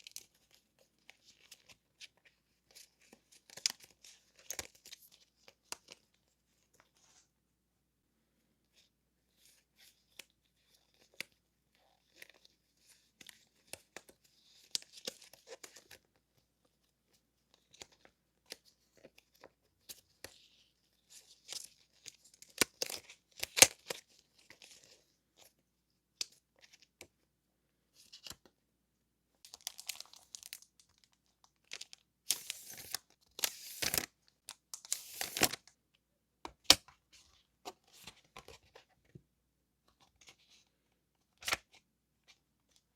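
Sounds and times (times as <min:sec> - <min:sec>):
packaging crinkling and tearing: 0:29.5 - 0:34.1, 0:34.7 - 0:35.7.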